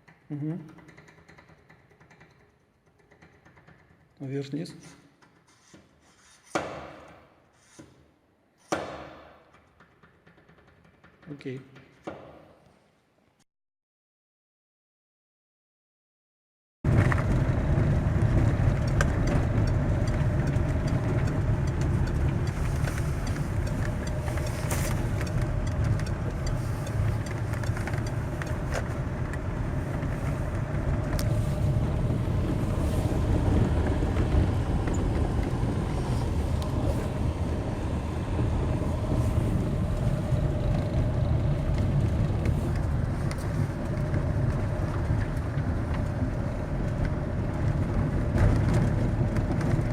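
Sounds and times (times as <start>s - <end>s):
sharp clicks and knocks: 0.0s - 4.2s, 8.6s - 12.4s, 18.4s - 31.3s
van driving rumble: 16.9s - 49.9s.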